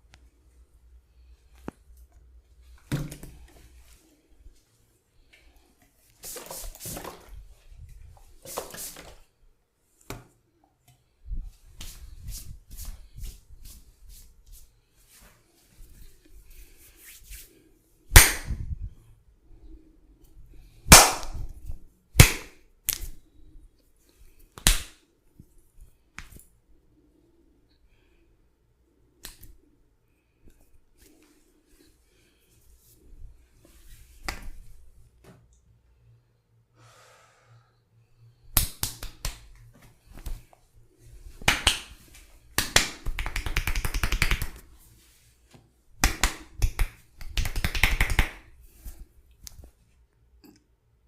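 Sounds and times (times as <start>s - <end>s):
hands rubbing and patting skin: 5.9s - 9.2s, 11.5s - 16.0s, 16.6s - 18.7s, 20.9s - 23.2s, 26.2s - 26.6s, 33.6s - 35.0s, 38.6s - 40.6s, 41.2s - 49.8s
sharp loud pops: 20.9s - 21.5s.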